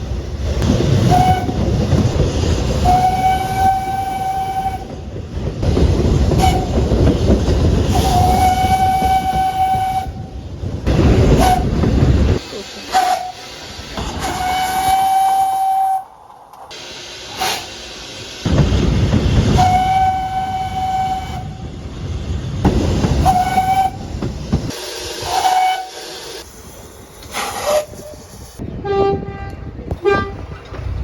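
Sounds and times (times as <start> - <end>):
rail traffic rumble and hiss: 0.0 - 31.0
train whistle blasts: 1.1 - 1.6, 2.8 - 4.9, 7.9 - 10.3, 14.2 - 16.1, 19.5 - 21.6, 23.2 - 24.0, 25.2 - 26.0, 28.8 - 30.4.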